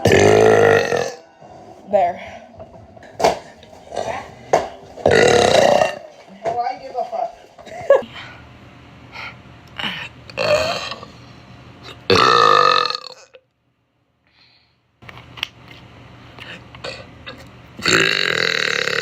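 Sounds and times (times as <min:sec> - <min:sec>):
woman burping: 0:00.0 - 0:01.3, 0:05.0 - 0:06.1, 0:10.4 - 0:11.1, 0:12.1 - 0:13.4, 0:16.8 - 0:19.0.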